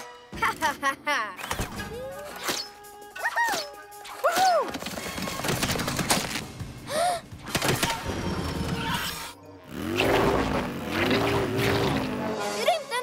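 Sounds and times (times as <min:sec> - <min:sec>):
cartoon background music: 0:00.0 - 0:13.0.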